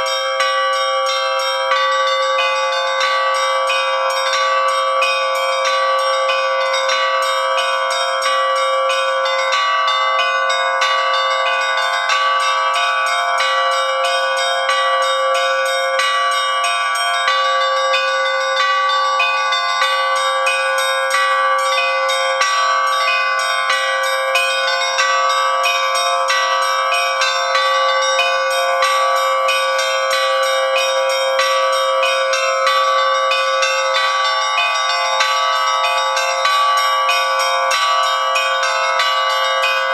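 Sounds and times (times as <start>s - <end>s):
middle church bells ringing: 0.0s - 39.9s
small church bells striking fast: 0.0s - 39.9s.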